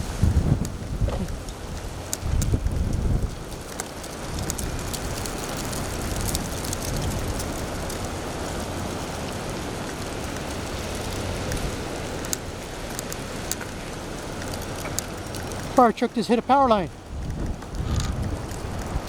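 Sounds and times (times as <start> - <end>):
strong wind storm rushing: 0.0 - 3.6, 16.4 - 19.0
sharp clicks and snaps: 2.0 - 8.1, 10.2 - 15.8.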